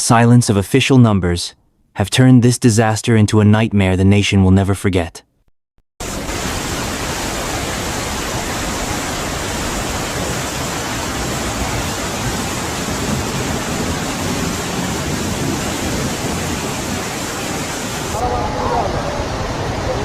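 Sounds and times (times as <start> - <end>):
rushing water: 6.0 - 20.0.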